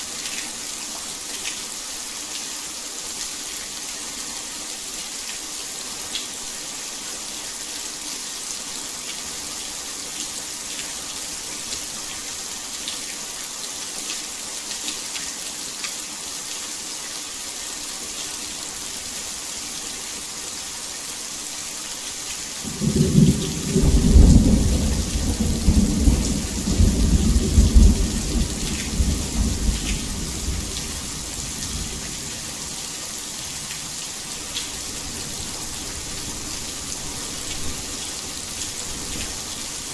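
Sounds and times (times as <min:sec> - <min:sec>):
heavy rain hissing: 0:18.6 - 0:39.9
thunder rumbling: 0:22.7 - 0:32.7.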